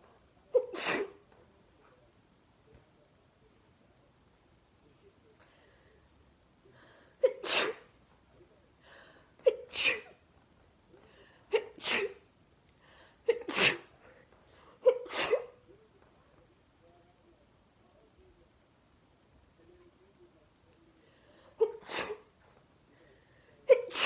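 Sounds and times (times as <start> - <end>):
woman sneezing: 0.6 - 1.2, 7.2 - 7.8, 9.4 - 10.2, 11.5 - 12.2, 13.3 - 13.9, 14.8 - 15.5, 21.6 - 22.3, 23.6 - 24.0.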